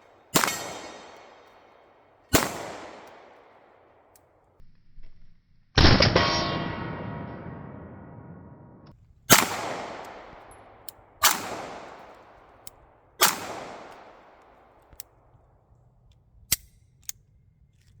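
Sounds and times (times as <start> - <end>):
pistol shots echoing: 0.0 - 4.2, 9.3 - 15.0
faint clicks: 13.8 - 18.0.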